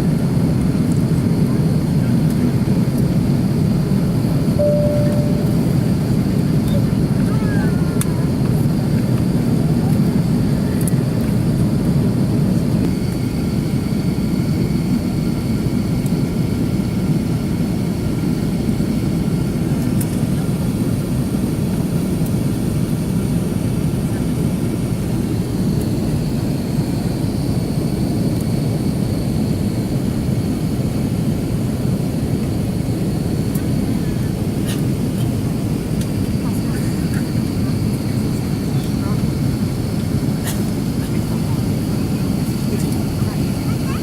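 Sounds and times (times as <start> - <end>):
jet engine cabin rumble: 0.0 - 44.0
high engine whine: 4.4 - 7.3.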